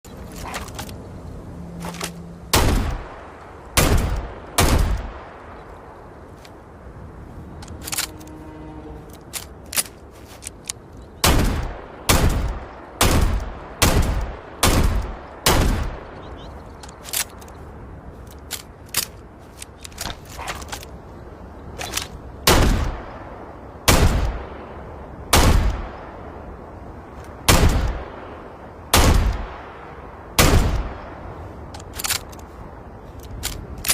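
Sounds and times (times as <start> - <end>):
revolver gunshots: 2.5 - 3.2, 3.8 - 5.3, 11.2 - 16.1, 28.9 - 29.6, 30.4 - 31.0.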